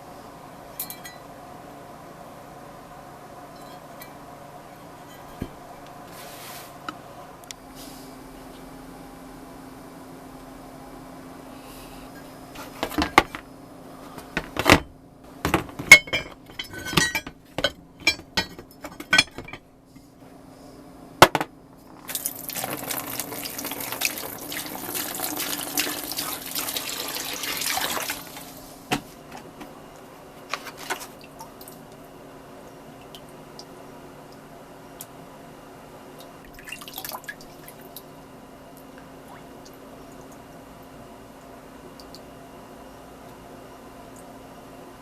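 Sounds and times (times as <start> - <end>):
cast iron parts clinking: 15.5 - 19.7
water running: 22.0 - 28.8, 36.4 - 38.1.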